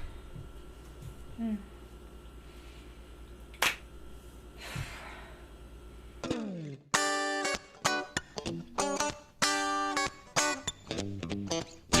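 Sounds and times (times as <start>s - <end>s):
steady low hum: 0.0s - 6.5s
plucked guitar chords: 6.2s - 12.0s.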